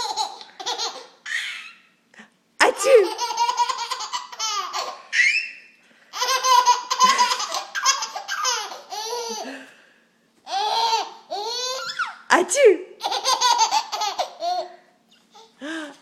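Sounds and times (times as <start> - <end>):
small child laughing: 0.0 - 1.8, 2.8 - 5.5, 6.1 - 9.7, 10.5 - 12.2, 13.0 - 15.6.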